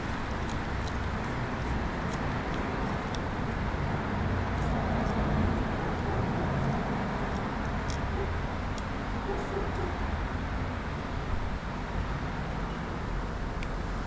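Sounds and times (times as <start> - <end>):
low traffic rumble: 0.0 - 14.0.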